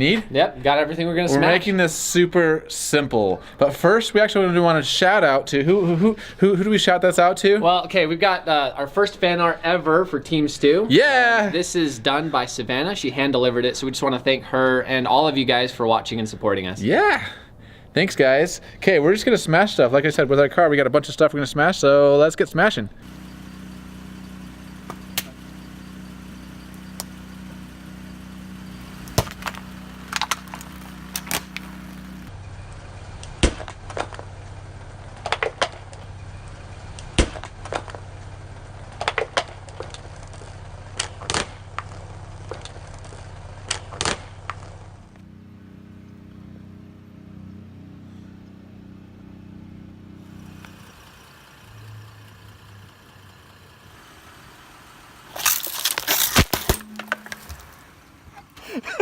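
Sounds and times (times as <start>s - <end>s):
car engine idling: 22.9s - 59.0s
tyre crushing brittle objects: 23.0s - 32.3s, 55.3s - 58.0s.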